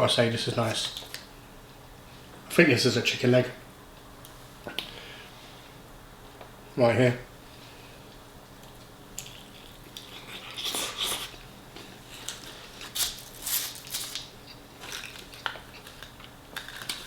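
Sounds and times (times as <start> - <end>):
crunchy chewing: 8.7 - 17.0.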